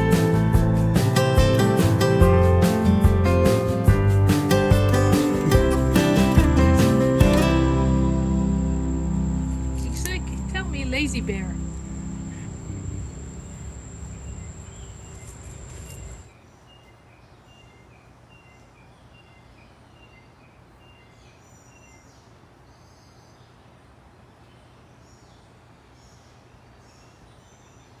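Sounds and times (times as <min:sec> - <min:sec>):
birds chirping: 0:00.0 - 0:22.3
low steady hum: 0:04.9 - 0:16.3
thin high whine: 0:05.1 - 0:16.3
insects: 0:05.2 - 0:16.3.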